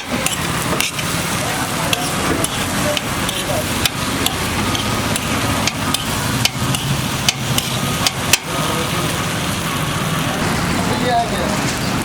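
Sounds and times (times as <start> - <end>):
frying hiss: 0.0 - 12.0
metal spatula knocking on pan: 5.2 - 8.5.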